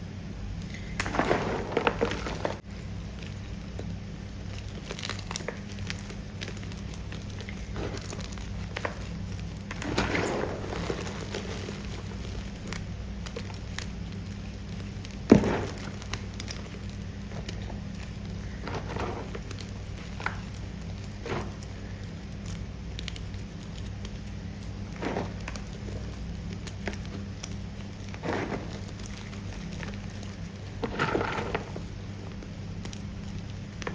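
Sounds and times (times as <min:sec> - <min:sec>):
steady low hum: 0:00.0 - 0:33.9
chewing crunchy chalk: 0:02.8 - 0:33.9.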